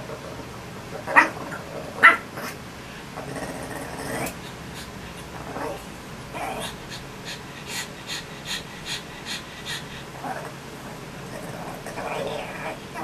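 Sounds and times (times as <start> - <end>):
pet breathy puffs: 3.9 - 13.0.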